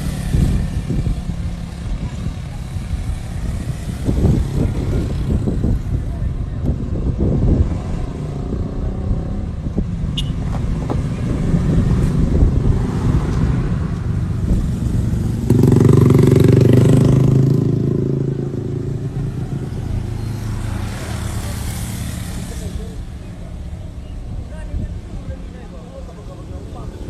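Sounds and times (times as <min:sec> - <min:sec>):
low traffic rumble: 0:00.0 - 0:27.0
vehicle engine passing close: 0:10.7 - 0:23.0.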